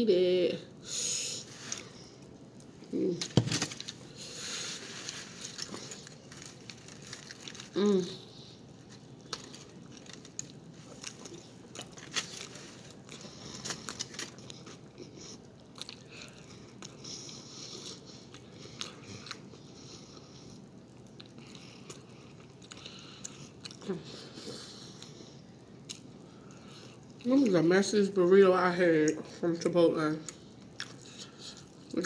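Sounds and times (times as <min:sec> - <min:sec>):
person chewing food: 0:01.5 - 0:27.3, 0:30.3 - 0:32.0.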